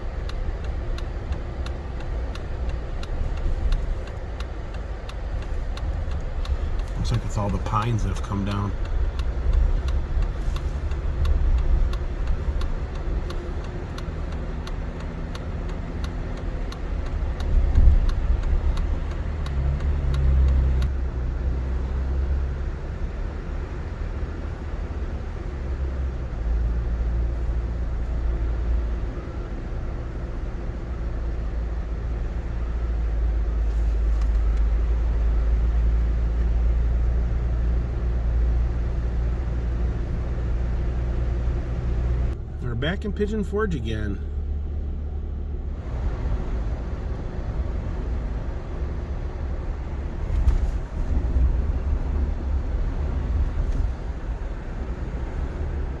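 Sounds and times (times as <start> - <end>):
faint regular ticking: 0.0 - 21.0
car engine and tyres rumbling: 0.0 - 56.0.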